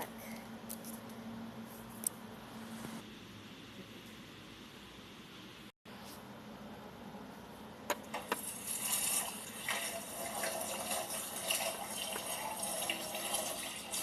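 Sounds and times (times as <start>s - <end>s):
tap water running into sink: 8.2s - 14.0s.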